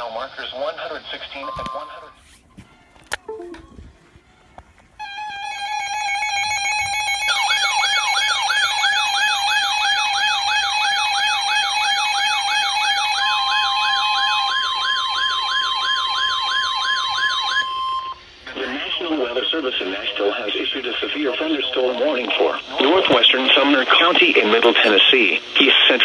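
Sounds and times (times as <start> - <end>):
steady electronic alert tone: 3.3 - 3.9.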